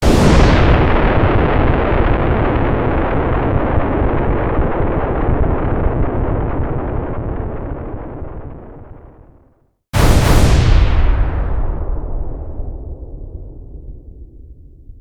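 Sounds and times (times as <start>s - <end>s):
explosion rumble: 0.0s - 9.1s, 10.0s - 15.0s.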